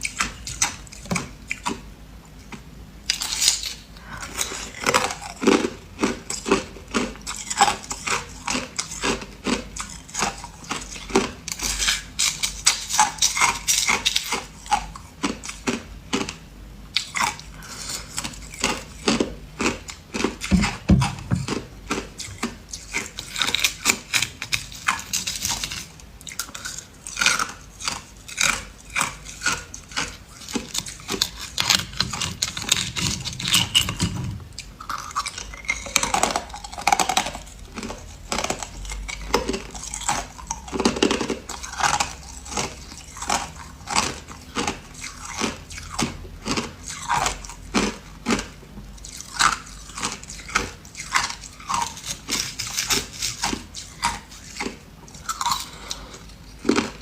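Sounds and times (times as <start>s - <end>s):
ice crunching between teeth: 17.0s - 57.0s.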